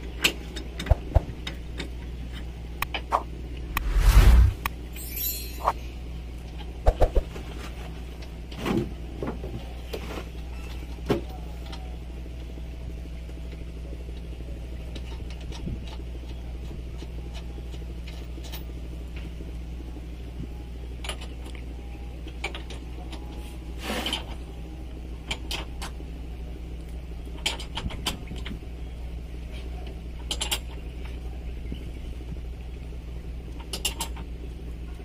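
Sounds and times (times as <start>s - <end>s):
low engine hum: 0.0s - 23.4s.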